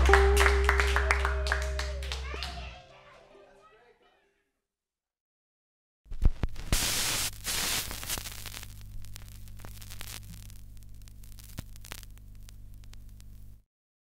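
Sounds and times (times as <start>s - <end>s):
clicks and crackles: 6.1s - 13.6s
electrical mains hum: 6.1s - 13.6s
static hiss: 6.1s - 13.6s.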